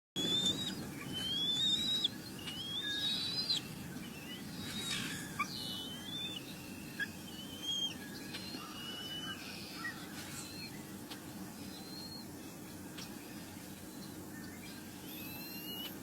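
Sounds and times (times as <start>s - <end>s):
animal squeaky calls: 0.2s - 3.6s, 15.1s - 16.0s.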